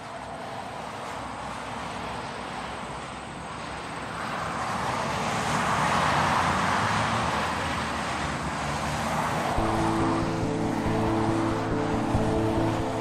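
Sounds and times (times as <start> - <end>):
steady rushing noise: 9.3 - 13.0.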